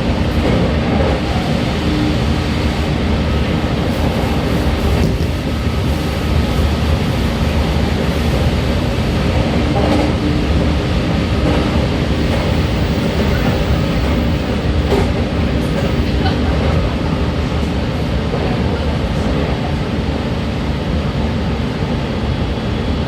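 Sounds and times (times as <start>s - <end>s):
faint steady whine: 12.1s - 16.3s.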